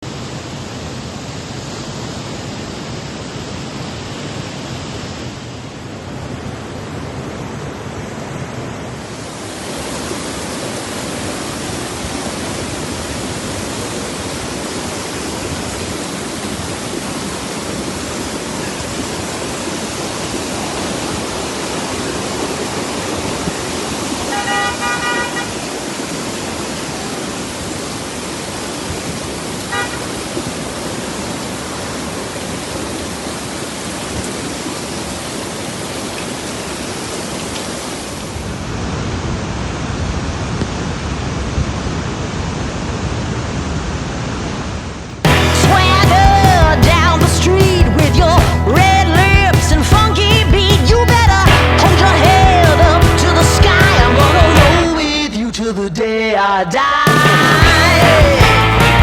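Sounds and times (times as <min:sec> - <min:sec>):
heavy rain: 0:00.0 - 0:56.2, 0:56.9 - 0:59.0
traffic on wet streets: 0:04.5 - 0:41.8
car horn: 0:24.3 - 0:25.6, 0:29.7 - 0:30.2, 0:53.3 - 0:55.2.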